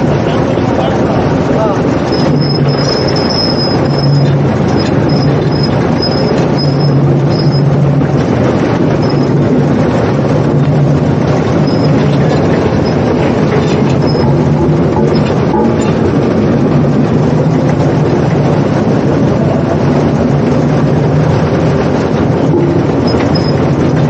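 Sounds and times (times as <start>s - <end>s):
road roller engine droning: 0.0s - 24.0s.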